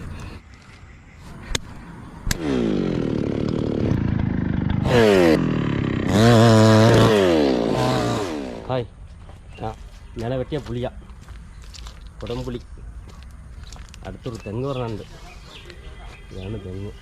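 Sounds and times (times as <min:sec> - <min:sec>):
chainsaw engine revving: 0:02.3 - 0:08.8.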